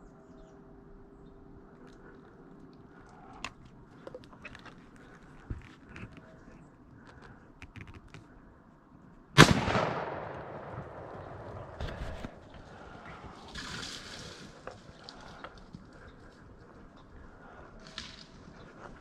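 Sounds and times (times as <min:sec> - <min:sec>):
faint clicks: 0:01.7 - 0:09.2, 0:10.2 - 0:19.0
loud gunshot echoing: 0:09.4 - 0:12.4
rustling: 0:11.1 - 0:19.0.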